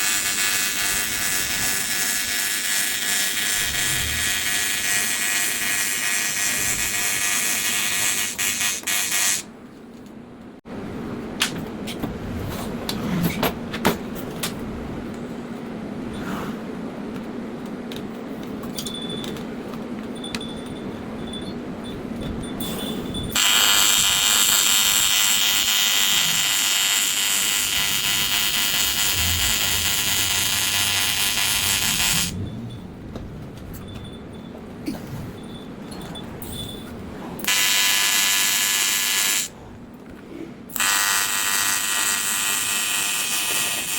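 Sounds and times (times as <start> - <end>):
welding arc buzz: 0.0 - 9.5, 23.3 - 32.4, 37.4 - 39.6, 40.7 - 43.9
steady low hum: 3.3 - 40.8.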